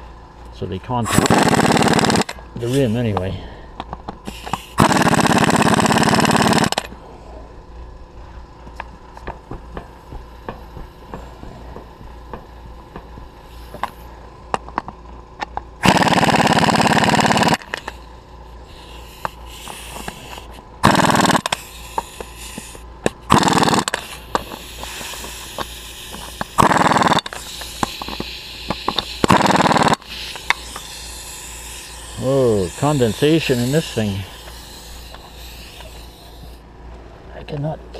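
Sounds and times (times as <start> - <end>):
pneumatic impact wrench bursts: 1.0 - 7.0, 9.8 - 36.6.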